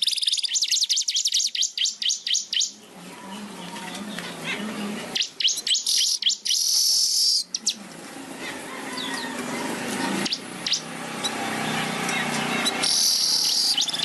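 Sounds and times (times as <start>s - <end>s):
bird chirping: 0.0s - 14.0s
bird harsh buzzing note: 10.2s - 14.0s.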